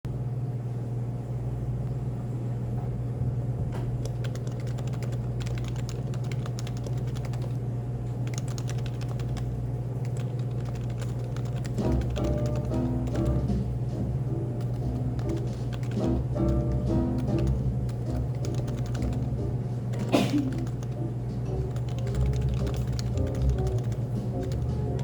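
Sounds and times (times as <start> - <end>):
cafe background hum: 0.1 - 25.0
music: 11.6 - 25.0.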